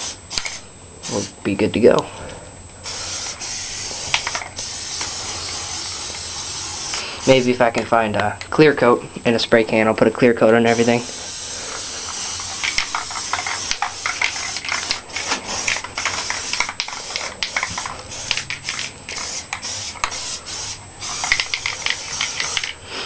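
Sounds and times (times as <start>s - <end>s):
spray paint can hissing: 0.0s - 1.3s, 2.8s - 7.6s, 10.7s - 23.0s.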